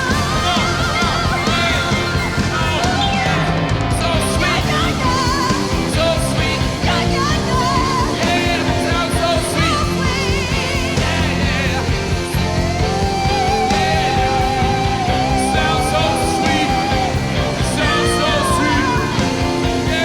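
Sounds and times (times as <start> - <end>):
live rock band playing: 0.0 - 20.0
wavering singing vocals: 0.0 - 20.0.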